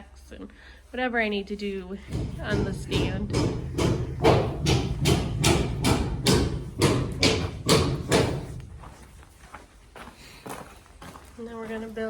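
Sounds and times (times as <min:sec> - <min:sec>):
footsteps walking: 0:05.7 - 0:12.0.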